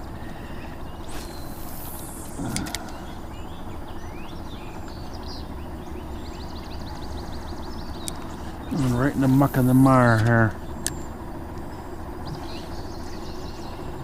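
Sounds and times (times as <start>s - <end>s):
birds calling: 0.0s - 14.0s
steady low rumble: 0.0s - 14.0s
sharp clicks: 1.2s - 3.1s.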